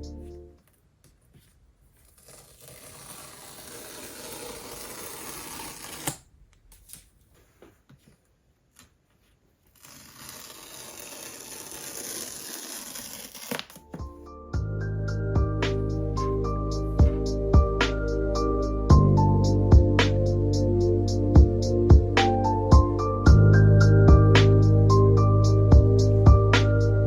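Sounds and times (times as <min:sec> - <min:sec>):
paper tearing: 0:02.0 - 0:07.0, 0:09.7 - 0:13.9.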